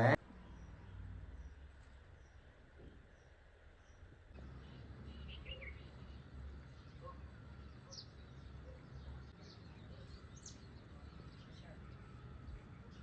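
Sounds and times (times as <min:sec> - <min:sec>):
faint bird chirps: 0:00.4 - 0:06.3.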